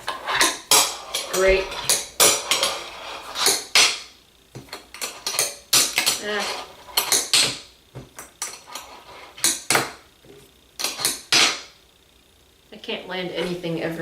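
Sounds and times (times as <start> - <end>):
small wheels rolling: 4.7 - 7.4.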